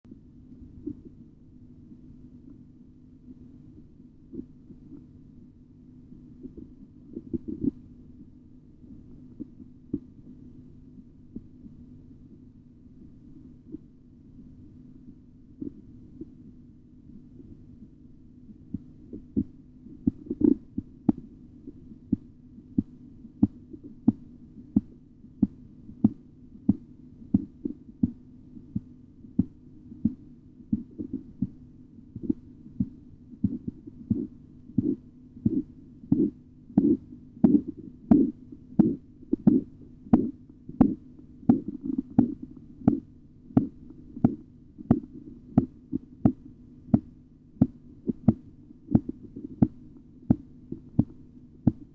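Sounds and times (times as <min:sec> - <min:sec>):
steady low hum: 0:00.0 - 0:51.9
pulse tapping through stethoscope: 0:06.4 - 0:07.8, 0:18.6 - 0:51.9.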